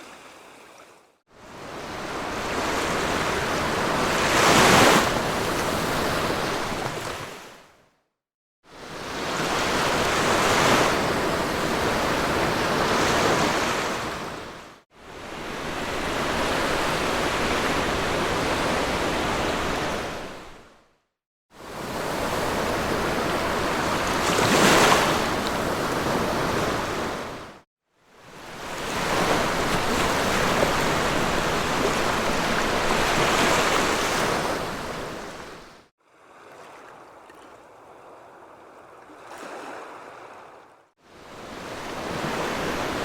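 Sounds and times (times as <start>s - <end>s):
sea waves washing onto beach: 28.5s - 35.8s.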